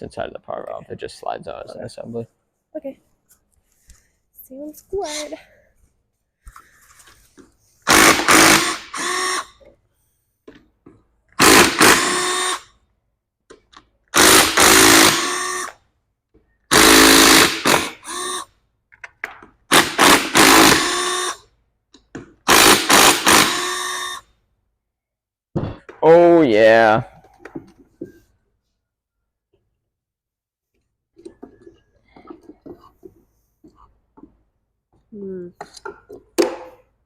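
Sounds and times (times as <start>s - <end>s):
cordless power driver running: 7.9s - 9.5s, 11.4s - 12.6s, 14.2s - 15.7s, 16.7s - 18.4s, 19.7s - 21.4s, 22.5s - 24.2s.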